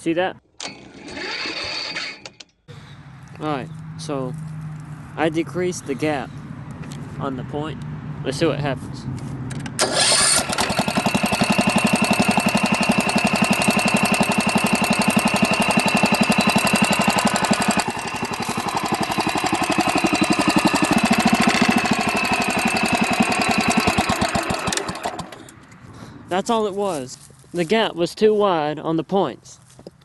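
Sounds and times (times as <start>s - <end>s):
garden tractor engine running: 9.7s - 25.6s.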